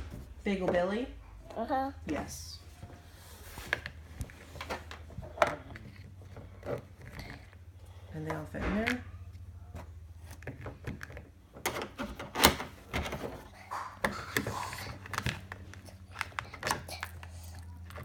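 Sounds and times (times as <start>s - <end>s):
plastic toys clicking and knocking: 9.7s - 17.4s.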